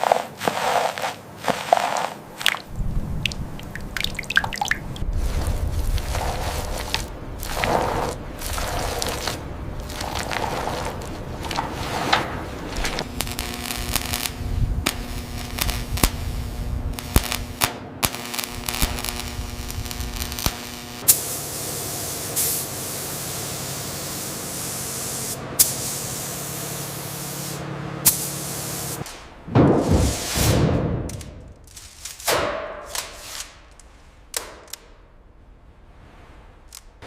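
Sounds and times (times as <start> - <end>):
even hissing: 0.0 - 17.6.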